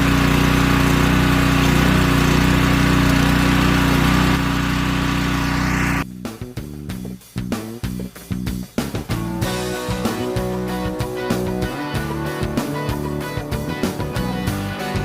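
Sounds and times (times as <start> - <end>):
pressure washer engine running: 0.0 - 6.0, 9.3 - 15.0.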